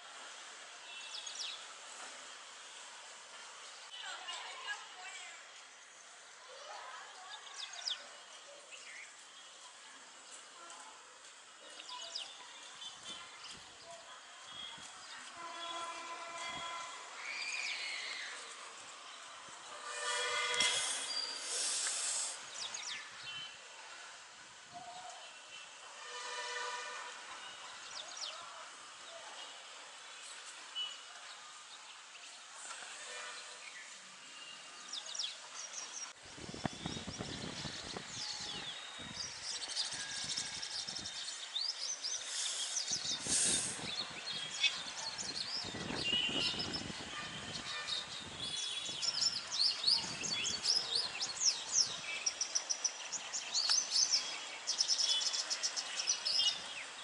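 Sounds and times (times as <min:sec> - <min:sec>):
birds chirping and whistling: 0:36.5 - 0:46.9.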